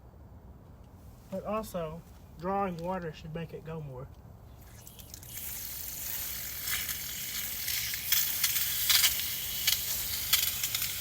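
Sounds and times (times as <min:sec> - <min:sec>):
gas burners crackling: 0:00.7 - 0:11.0
water heater hissing: 0:04.6 - 0:11.0.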